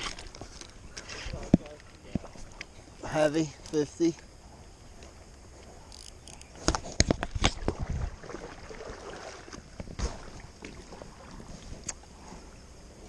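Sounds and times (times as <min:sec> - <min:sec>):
water splashing: 0:07.2 - 0:12.5.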